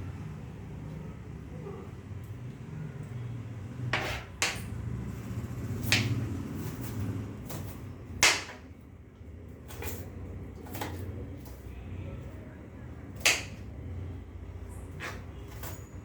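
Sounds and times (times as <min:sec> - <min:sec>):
knife cutting onions: 0:03.9 - 0:04.6, 0:05.7 - 0:08.6, 0:13.1 - 0:13.6.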